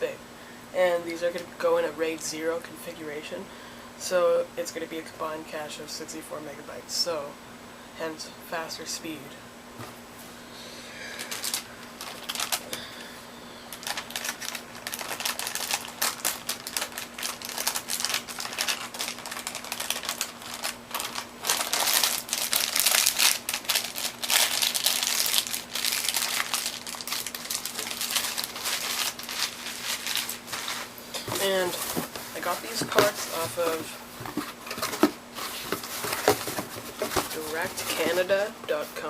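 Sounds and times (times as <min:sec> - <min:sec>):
faint steady hum: 0:00.0 - 0:39.0
packaging crinkling: 0:11.2 - 0:13.0, 0:13.7 - 0:38.3.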